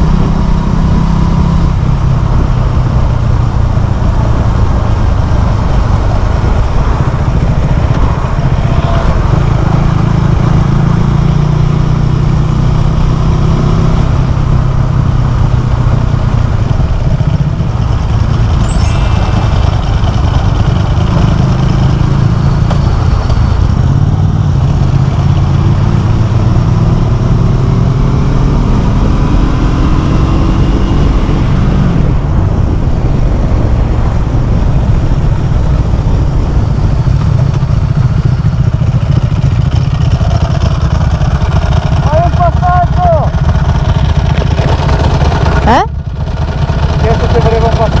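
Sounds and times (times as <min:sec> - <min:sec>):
motorcycle engine running: 0:00.0 - 0:48.0.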